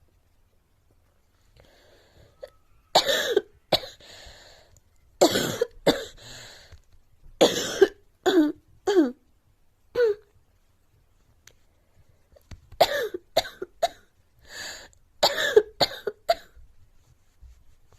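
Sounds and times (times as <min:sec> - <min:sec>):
girl coughing: 0:03.0 - 0:04.0, 0:05.2 - 0:06.2, 0:07.4 - 0:09.2, 0:12.8 - 0:14.1, 0:15.2 - 0:16.6.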